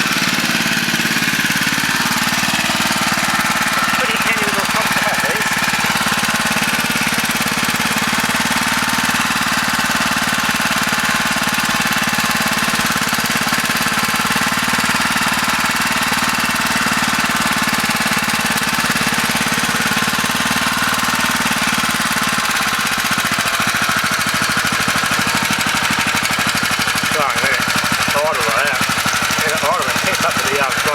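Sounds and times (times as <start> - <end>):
small engine water pump running: 0.0 - 30.9.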